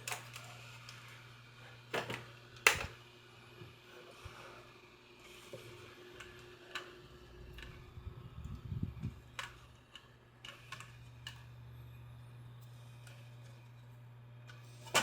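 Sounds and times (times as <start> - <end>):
steady low hum: 5.5 - 15.0.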